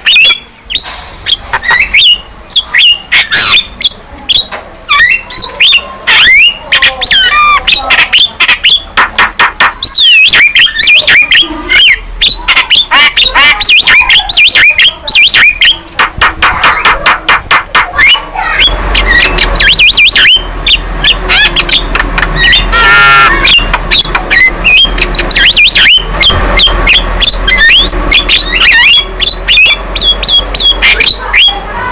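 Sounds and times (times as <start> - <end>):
myna bird singing squawks and whistles: 0.0 - 31.6.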